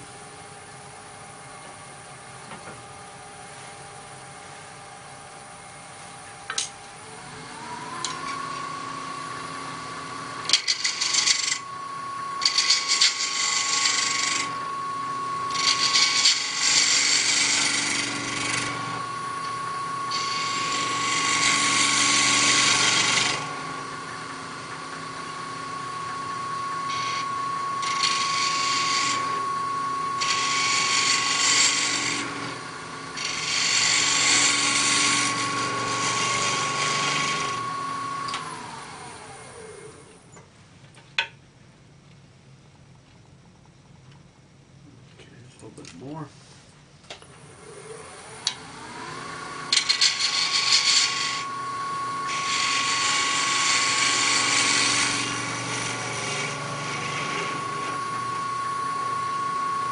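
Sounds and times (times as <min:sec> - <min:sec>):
wood lathe motor whine: 0:06.6 - 0:40.3, 0:47.3 - 0:59.9
turning tool cutting wood hissing: 0:07.5 - 0:40.0, 0:47.6 - 0:59.9.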